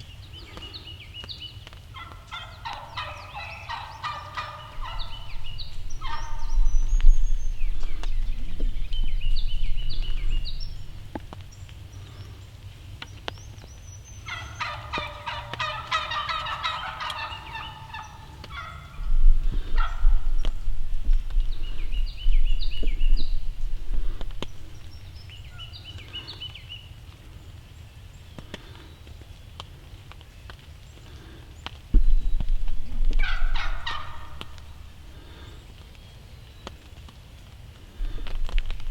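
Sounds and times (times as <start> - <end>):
songbirds singing: 0.0 - 38.9
turkey gobbling: 1.9 - 7.0, 14.2 - 20.6, 32.8 - 35.6
low rumble: 4.7 - 12.0, 18.8 - 25.6, 31.9 - 35.2.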